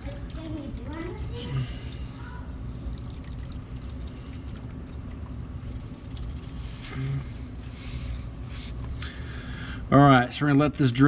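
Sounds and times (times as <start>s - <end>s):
oil draining into pan: 0.0s - 6.7s.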